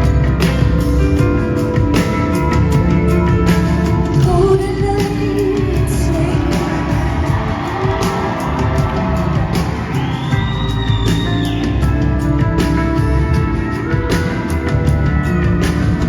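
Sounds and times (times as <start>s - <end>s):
bass: 0.0s - 16.0s
drums: 0.0s - 16.0s
woman singing: 4.1s - 8.1s.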